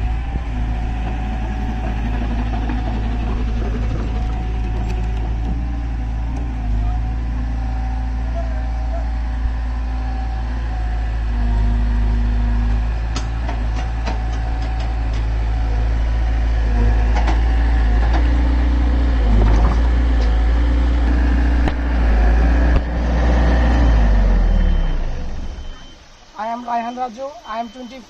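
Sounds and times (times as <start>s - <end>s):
excavator diesel engine running: 0.0s - 26.2s
metallic clanks and knocks: 13.1s - 15.4s.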